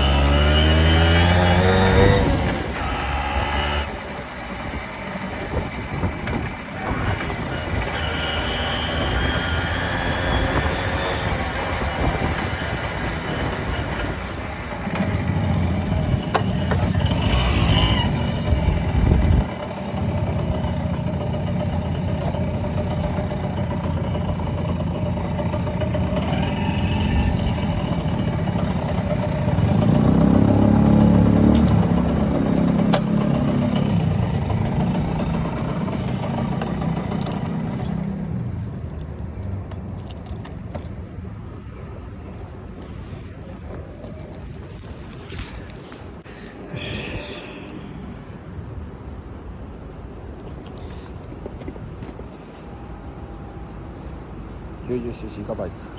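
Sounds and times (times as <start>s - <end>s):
motorcycle engine running: 0.0s - 41.3s
wind and road noise: 0.0s - 55.9s.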